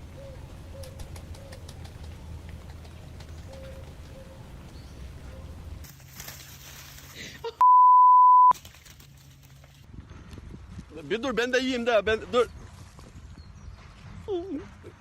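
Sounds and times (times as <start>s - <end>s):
pigeon cooing: 0.1s - 5.6s
censor bleep tone: 7.6s - 8.6s.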